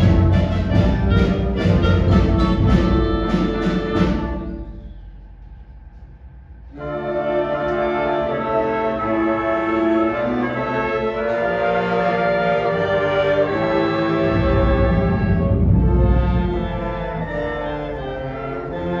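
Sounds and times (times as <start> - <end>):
concert band brass and woodwind chords: 0.0 - 5.2, 6.7 - 19.0
low drums: 0.0 - 8.1, 12.6 - 18.1.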